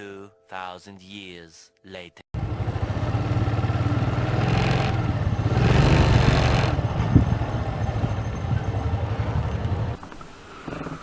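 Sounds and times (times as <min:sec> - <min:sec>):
motorcycle engine running: 0:02.4 - 0:10.0.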